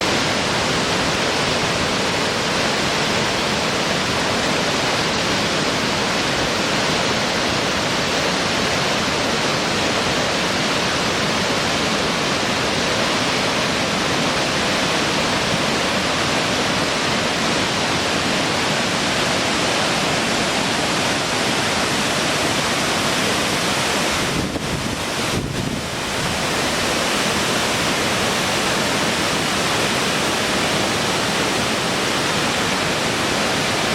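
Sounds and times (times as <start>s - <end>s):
water rushing: 0.0s - 33.9s.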